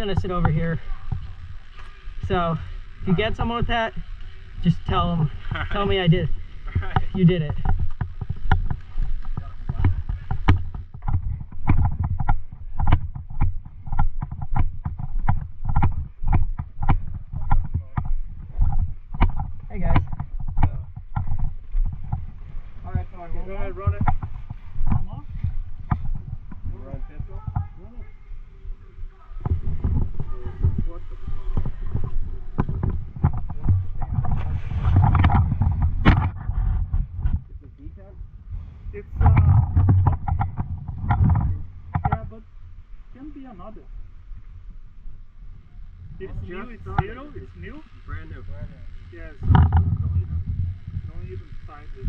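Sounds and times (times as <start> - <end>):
rustle and clatter: 0.0 - 28.1, 29.2 - 37.9, 39.2 - 42.5, 46.0 - 52.0
wind buffeting microphone: 0.0 - 52.0
footsteps with dull thuds: 4.6 - 37.8.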